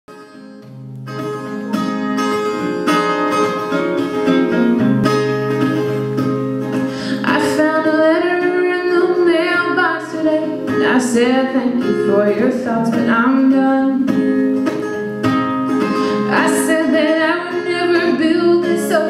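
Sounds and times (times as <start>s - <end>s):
acoustic guitar strumming: 0.1s - 19.0s
person singing: 7.1s - 14.2s, 15.9s - 19.0s.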